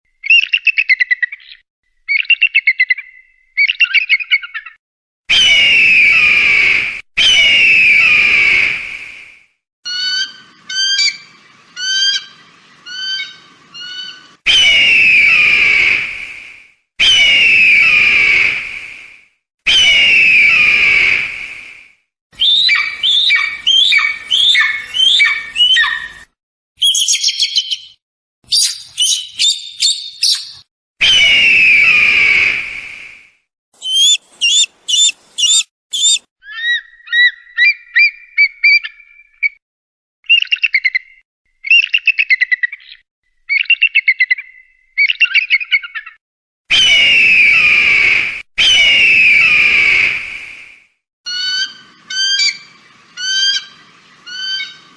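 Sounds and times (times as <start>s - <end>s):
eagle chirps and trills: 22.4s - 26.2s, 26.8s - 30.6s, 33.8s - 39.0s
eagle harsh scream: 33.8s - 36.2s.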